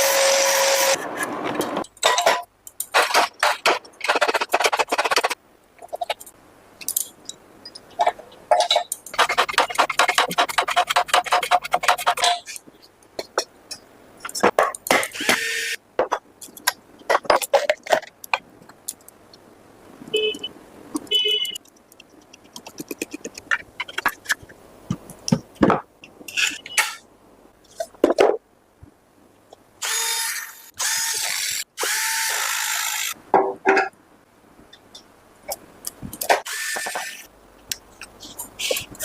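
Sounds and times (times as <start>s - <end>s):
metal parts clicking and squeaking: 4.0s - 9.3s, 12.0s - 12.9s, 26.3s - 27.0s, 38.0s - 39.0s.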